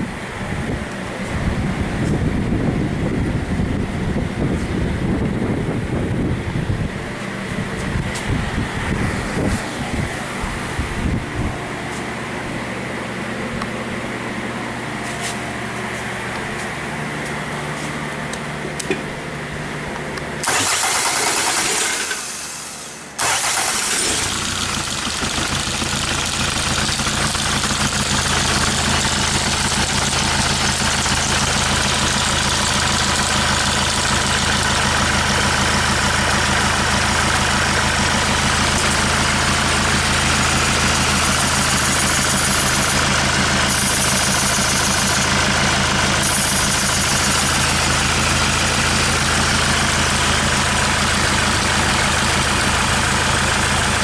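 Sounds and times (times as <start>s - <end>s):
diesel engine idling: 0.0s - 54.0s
diesel engine cranking: 20.4s - 54.0s.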